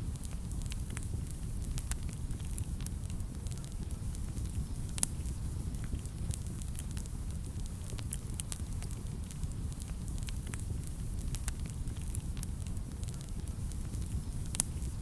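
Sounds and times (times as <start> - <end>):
fire crackling and popping: 0.0 - 15.0
fire flames rumbling: 0.0 - 15.0.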